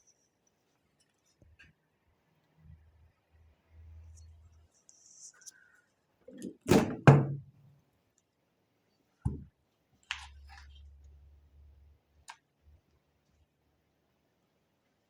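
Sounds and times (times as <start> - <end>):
soft thud: 9.3 - 9.5.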